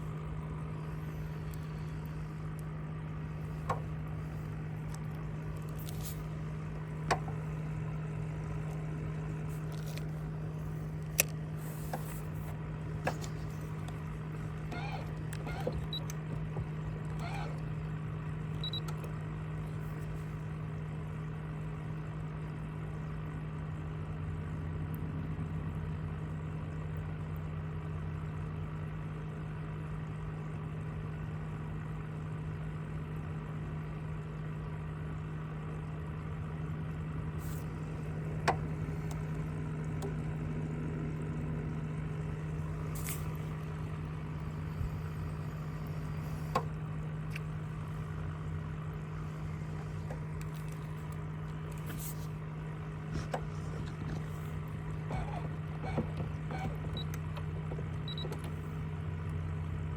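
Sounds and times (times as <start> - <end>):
boat motor humming: 0.0 - 20.8, 37.1 - 59.5.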